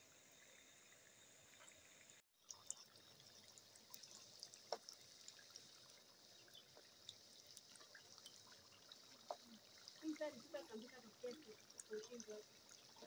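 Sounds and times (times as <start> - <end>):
small crackles: 2.4 - 13.0
food sizzling in hot oil: 2.6 - 13.0.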